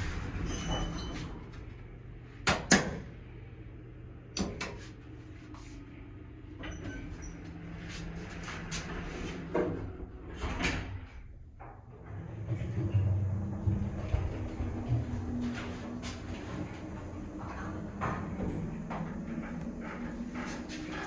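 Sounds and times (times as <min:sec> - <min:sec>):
elevator low hum: 0:00.0 - 0:21.0
elevator clunks and knocks: 0:09.4 - 0:21.0.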